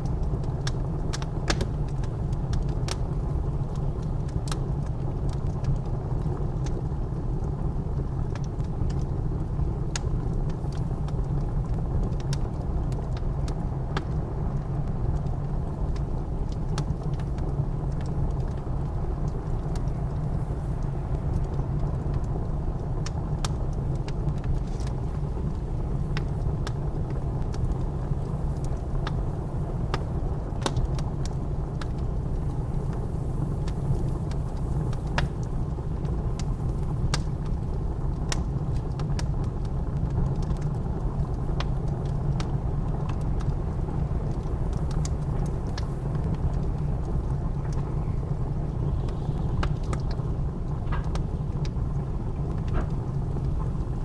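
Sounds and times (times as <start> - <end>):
wood fire crackling and popping: 0.0 - 54.0
blizzard wind rushing: 9.1 - 38.8, 40.8 - 54.0.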